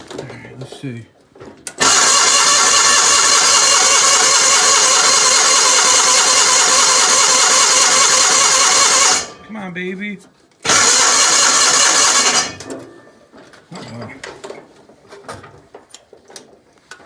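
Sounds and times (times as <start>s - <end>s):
tractor engine cranking: 1.6s - 9.8s, 10.6s - 13.1s.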